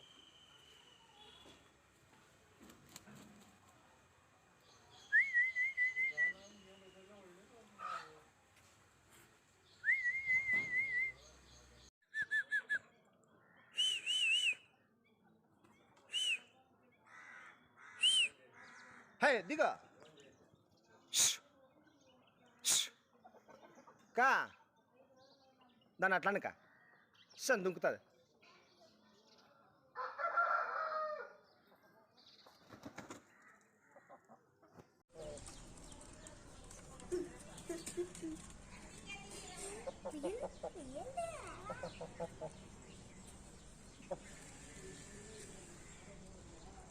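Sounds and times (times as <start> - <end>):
wings flapping: 2.6 - 3.8, 32.6 - 33.4, 35.2 - 42.7
rooster crowing: 30.0 - 31.4.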